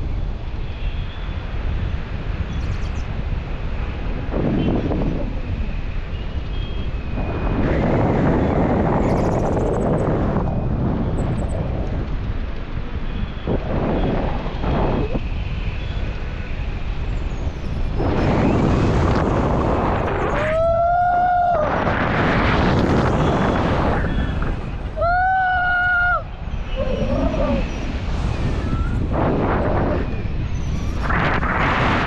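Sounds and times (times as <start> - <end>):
wind buffeting microphone: 0.0 - 32.0
long held cries: 25.0 - 26.3.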